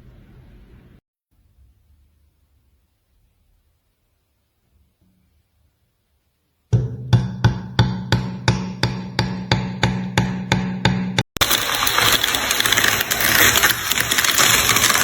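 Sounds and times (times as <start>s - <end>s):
sharp knocks: 6.7s - 11.4s.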